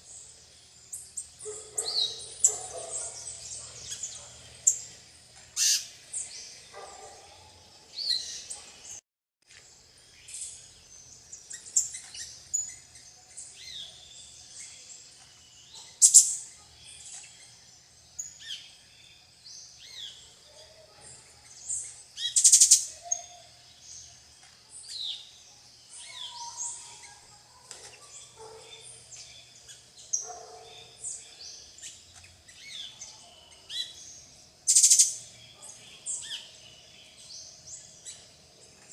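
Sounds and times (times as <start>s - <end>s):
high bird chirps: 5.6s - 5.9s, 34.7s - 38.3s
parakeets screeching: 5.6s - 6.0s.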